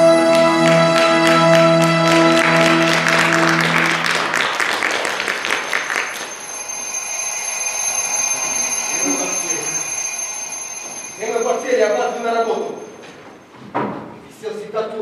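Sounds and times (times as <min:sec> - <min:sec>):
held music chords: 0:00.0 - 0:13.4
audience applauding: 0:00.1 - 0:09.9.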